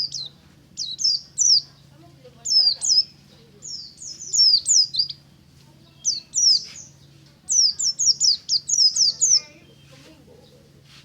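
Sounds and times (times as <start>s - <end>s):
bird high chirping notes: 0.0s - 1.8s, 2.4s - 5.2s, 5.8s - 10.1s.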